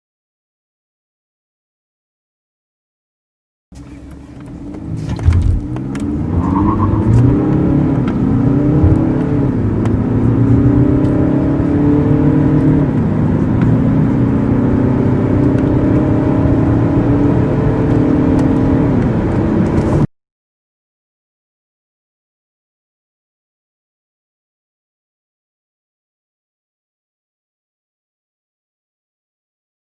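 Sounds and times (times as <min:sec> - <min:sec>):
car engine accelerating: 0:03.7 - 0:20.1.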